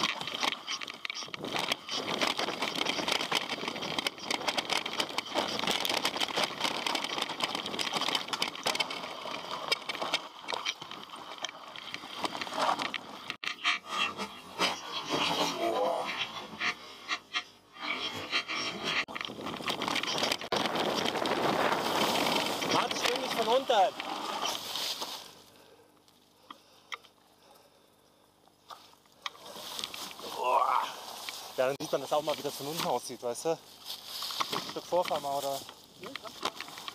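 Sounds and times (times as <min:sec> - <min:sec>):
bike clattering and knocking: 0:00.0 - 0:13.5, 0:18.5 - 0:25.0
bike tyres rolling over stones: 0:00.0 - 0:26.2, 0:28.7 - 0:36.9.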